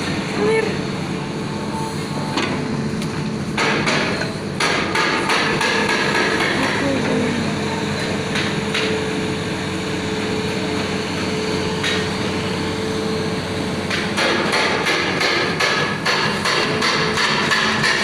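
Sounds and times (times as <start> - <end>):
excavator engine and hydraulic drone: 0.0 - 18.0
sharp metallic knocks: 3.6 - 7.0, 13.9 - 18.0.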